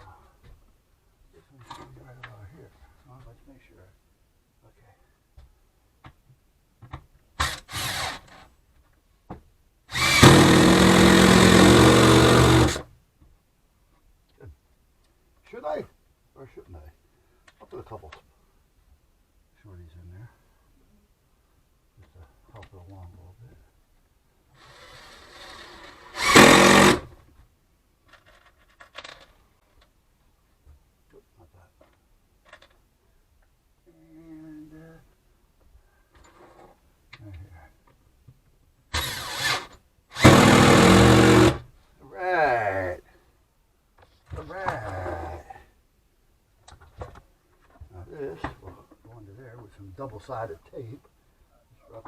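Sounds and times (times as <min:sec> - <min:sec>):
power drill drilling into wood: 0:07.4 - 0:08.4, 0:09.9 - 0:12.8, 0:24.6 - 0:27.1, 0:39.0 - 0:41.6.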